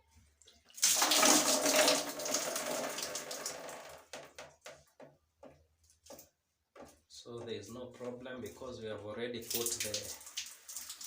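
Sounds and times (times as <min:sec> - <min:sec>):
water dripping: 0:00.3 - 0:07.0, 0:09.4 - 0:11.0
water pouring and splashing: 0:00.4 - 0:04.3, 0:09.4 - 0:11.0.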